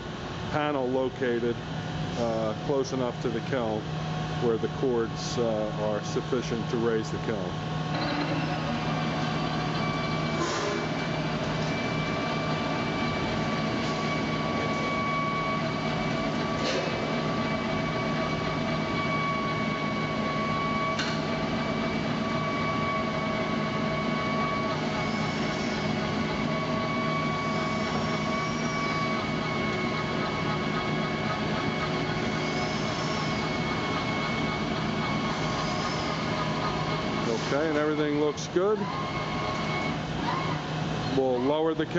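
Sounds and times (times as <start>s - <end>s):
steady machine hum: 0.0s - 41.9s.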